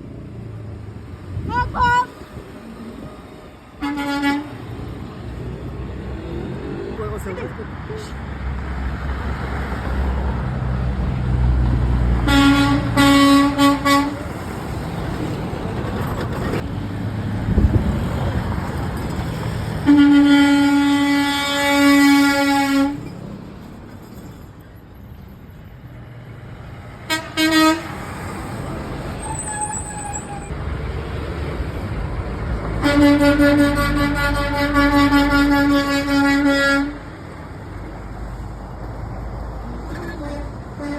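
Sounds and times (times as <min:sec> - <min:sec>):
passing traffic: 0:00.0 - 0:40.9
truck engines and road rumble: 0:00.0 - 0:40.9
truck air horns honking: 0:03.7 - 0:04.8, 0:12.2 - 0:14.4, 0:19.8 - 0:23.1, 0:27.0 - 0:28.4, 0:32.8 - 0:37.4, 0:39.9 - 0:40.9.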